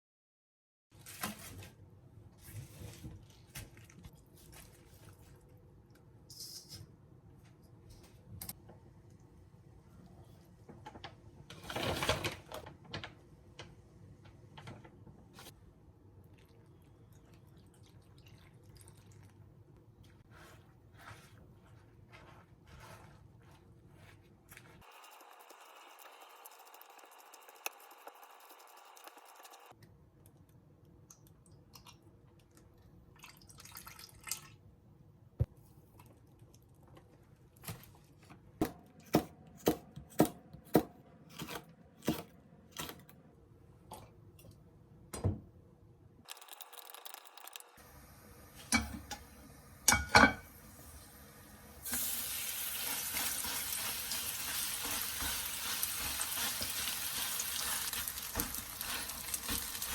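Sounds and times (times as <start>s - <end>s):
food sizzling in a pan: 47.8s - 59.9s
utensils and dishes clattering: 49.9s - 50.5s.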